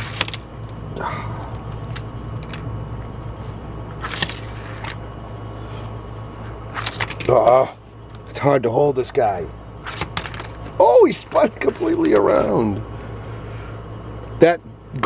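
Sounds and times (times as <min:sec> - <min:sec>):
toy car clicks and taps: 0:00.0 - 0:00.8, 0:01.6 - 0:02.7, 0:04.0 - 0:05.0, 0:06.8 - 0:07.4
steady low hum: 0:00.0 - 0:15.0.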